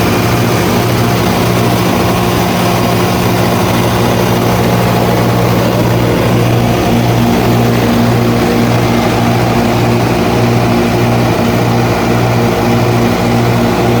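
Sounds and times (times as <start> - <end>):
diesel generator running: 0.0 - 14.0.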